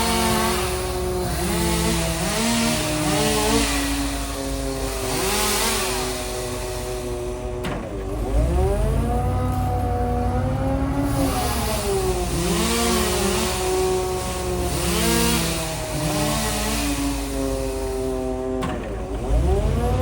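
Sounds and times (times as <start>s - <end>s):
steady low engine hum: 7.1s - 16.1s
engine pitch dropping and climbing: 7.6s - 16.8s.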